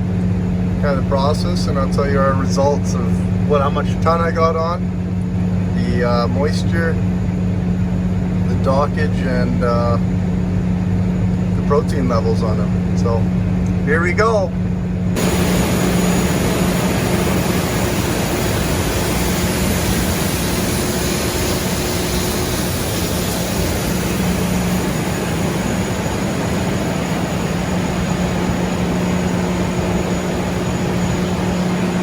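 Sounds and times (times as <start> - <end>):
constant low machinery hum: 0.0 - 32.0
even rushing noise: 15.2 - 32.0.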